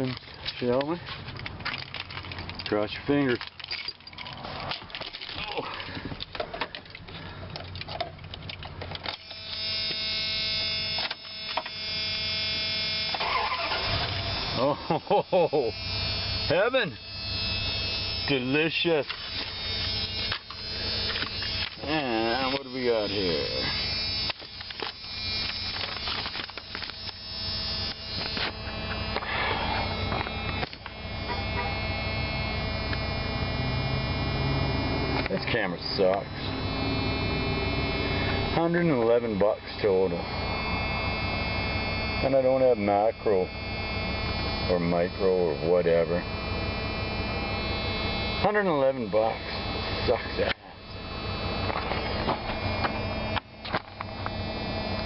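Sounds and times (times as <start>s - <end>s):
steady buzzing hum: 0.0s - 55.0s
starter motor whine: 9.0s - 55.0s
ignition clicks: 13.0s - 14.6s.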